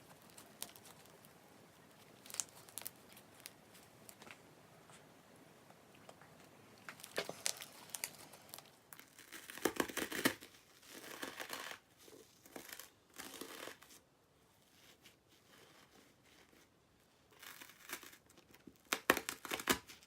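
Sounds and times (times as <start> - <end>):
crunchy slime squeezed and crackling: 2.0 - 3.6, 6.9 - 11.8, 12.4 - 13.9, 17.4 - 20.0.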